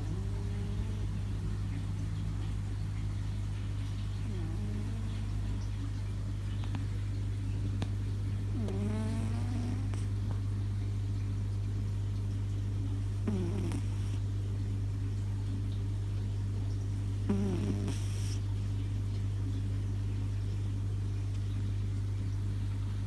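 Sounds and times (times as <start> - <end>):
cat snoring: 0.0 - 1.2, 4.2 - 5.4, 8.5 - 10.1, 13.2 - 14.2, 17.3 - 18.4
steady recording hum: 0.0 - 23.0.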